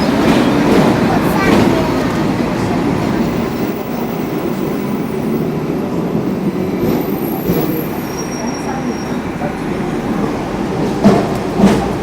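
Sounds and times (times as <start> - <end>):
tram rumbling on rails: 0.0 - 12.0
faint high squeal: 7.2 - 9.4.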